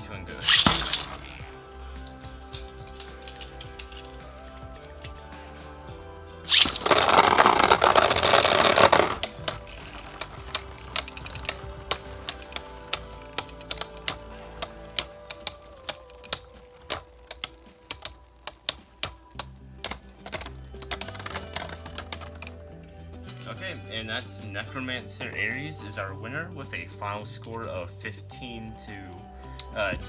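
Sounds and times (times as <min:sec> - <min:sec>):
background music: 0:00.0 - 0:30.0
spinning tops clashing and clicking: 0:00.4 - 0:05.5, 0:06.5 - 0:23.5.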